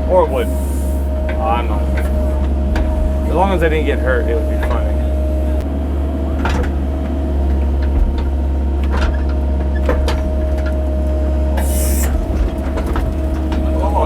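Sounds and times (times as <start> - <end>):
excavator diesel engine droning: 0.0 - 14.0
sharp knocks and clunks: 1.2 - 5.4, 6.4 - 10.8.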